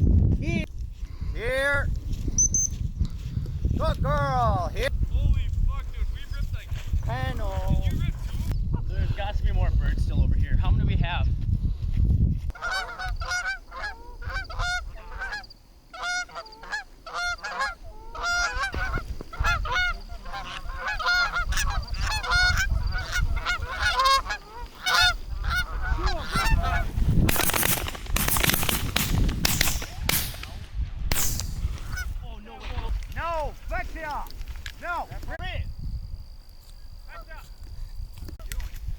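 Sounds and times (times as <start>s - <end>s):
geese honking and clucking: 12.5s - 27.1s, 31.8s - 32.6s.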